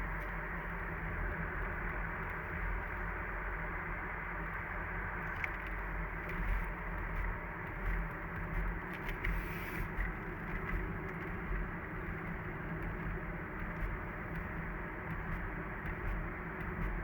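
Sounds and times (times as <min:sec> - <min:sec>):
car engine rumble: 0:00.0 - 0:17.0
faint ticks: 0:05.2 - 0:17.0.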